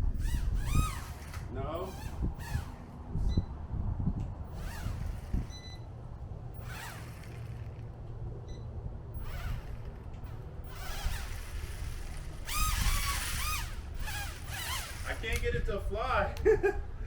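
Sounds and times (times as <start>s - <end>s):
small electric motors whirring: 0.0s - 3.3s, 4.4s - 5.9s, 6.5s - 8.4s, 9.1s - 15.7s
wind rumble on microphone: 0.0s - 17.0s.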